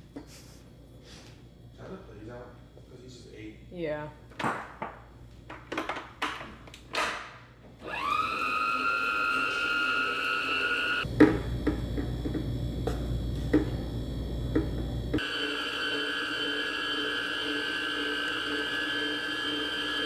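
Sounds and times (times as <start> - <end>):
small electric motor whining: 7.8 - 11.1, 14.8 - 20.0
low rumble with clicks: 11.1 - 15.2.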